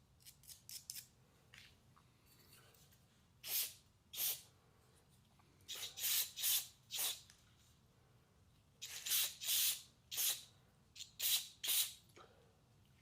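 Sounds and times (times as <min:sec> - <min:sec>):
hissing spray blasts: 0:05.7 - 0:07.2, 0:08.8 - 0:10.5.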